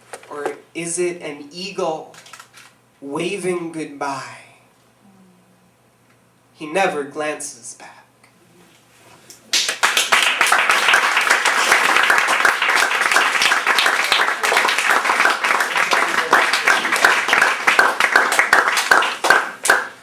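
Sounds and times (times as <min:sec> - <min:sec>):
audience applause and cheering: 0:09.6 - 0:20.0.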